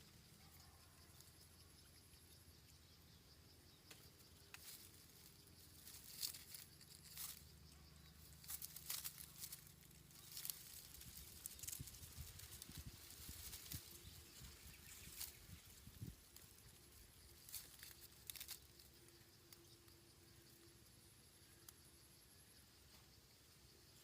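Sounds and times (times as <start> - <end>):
bird rustling in nest: 8.4 - 16.2.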